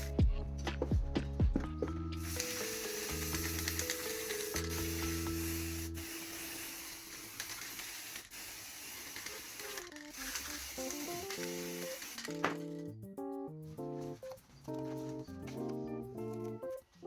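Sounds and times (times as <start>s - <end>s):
background melody: 0.0s - 7.0s, 10.3s - 17.0s
hissing rubbing noise: 2.2s - 12.6s.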